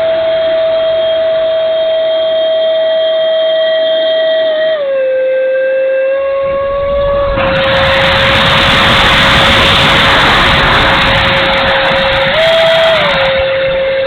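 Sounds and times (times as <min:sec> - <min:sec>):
electric ducted fan whining: 0:00.0 - 0:14.0.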